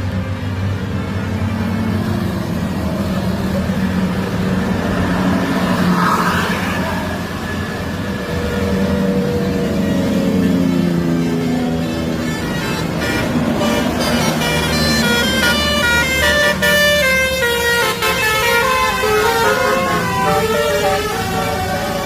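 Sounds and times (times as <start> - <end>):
heavy bus engines running: 0.0 - 22.0
musical bus horns playing a tune: 8.4 - 22.0.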